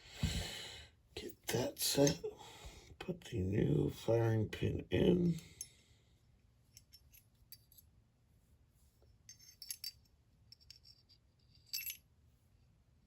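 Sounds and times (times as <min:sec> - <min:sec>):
clicks and clinks of steel parts: 0:06.7 - 0:07.9, 0:09.3 - 0:12.0.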